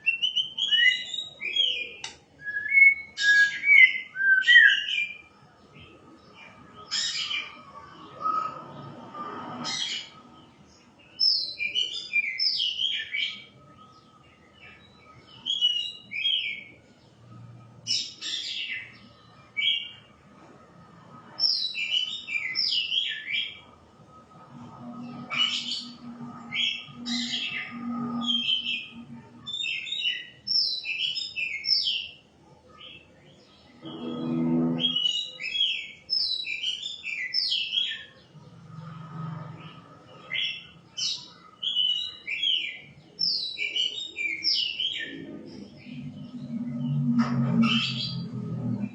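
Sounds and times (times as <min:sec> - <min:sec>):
bird whistling song: 0:00.0 - 0:05.3, 0:15.4 - 0:16.7, 0:34.8 - 0:38.1.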